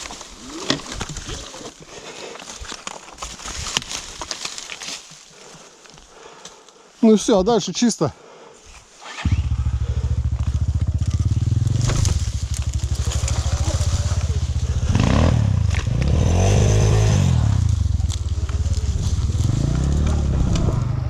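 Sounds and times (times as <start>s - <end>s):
off-road vehicle engine revving: 9.0s - 21.0s.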